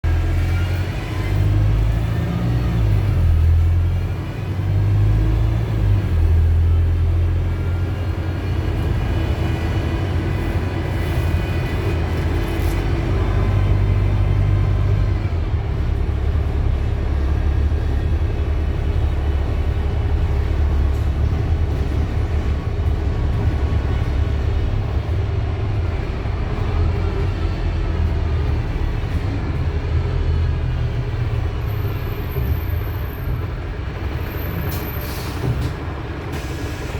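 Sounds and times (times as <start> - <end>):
bus engine low rumble: 0.0 - 36.9.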